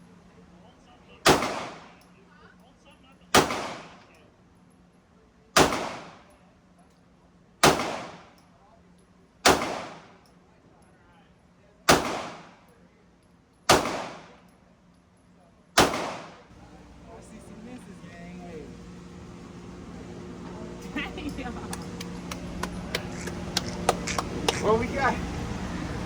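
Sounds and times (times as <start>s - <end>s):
gunshots with short echo: 1.2s - 2.0s, 3.3s - 4.1s, 5.6s - 6.3s, 7.6s - 8.3s, 9.4s - 10.2s, 11.9s - 12.6s, 13.7s - 14.4s, 15.8s - 16.5s.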